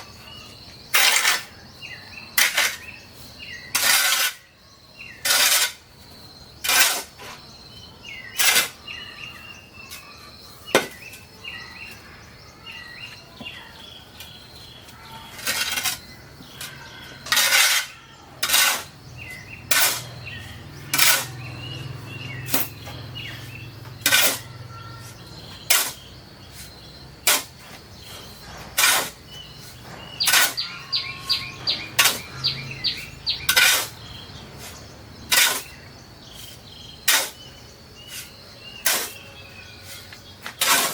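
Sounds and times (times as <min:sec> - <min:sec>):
birds chirping: 0:00.0 - 0:40.9
sharp knocks or scraping strokes: 0:14.2 - 0:40.9.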